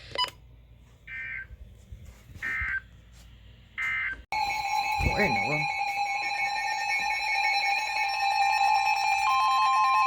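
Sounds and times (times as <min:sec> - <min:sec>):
steady high alert tone: 0:03.8 - 0:10.0.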